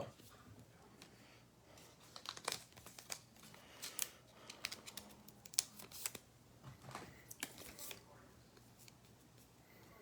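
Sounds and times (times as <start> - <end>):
foil wrapper crinkling and tearing: 2.0 - 6.2.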